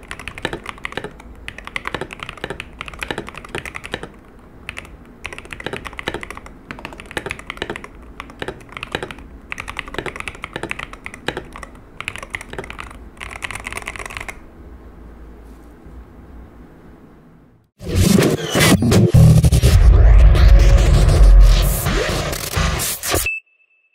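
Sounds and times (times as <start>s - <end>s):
keyboard key clicks: 0.2s - 14.4s.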